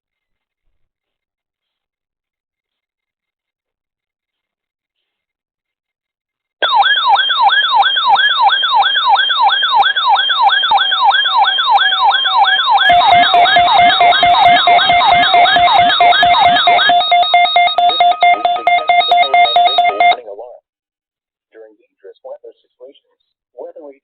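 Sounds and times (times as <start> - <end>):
electronic siren alert tone: 6.6 - 20.3
rapid pulsing high beeps: 6.6 - 20.3.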